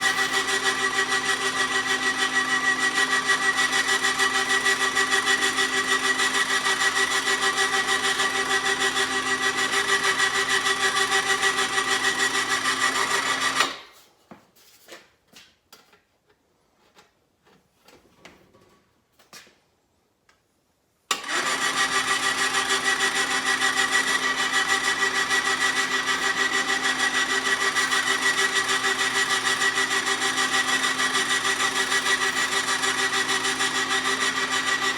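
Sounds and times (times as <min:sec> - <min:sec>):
bead roller motor whining: 0:00.0 - 0:13.7, 0:21.2 - 0:34.9.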